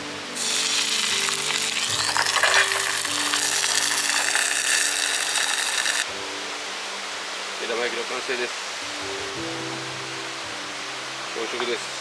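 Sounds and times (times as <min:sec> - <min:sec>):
egg sizzling in hot oil: 0:00.4 - 0:06.1.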